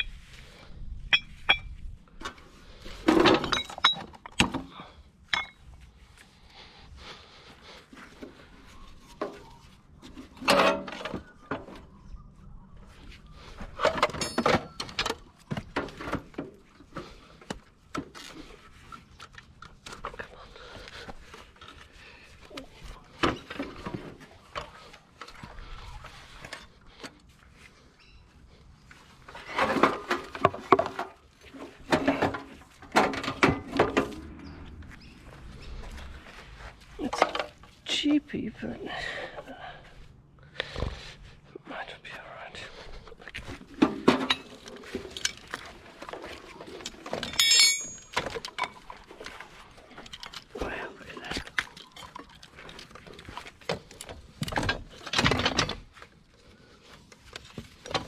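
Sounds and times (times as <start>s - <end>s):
scrap metal clinking: 47.0s - 48.8s
bright metallic ring: 47.4s - 48.1s.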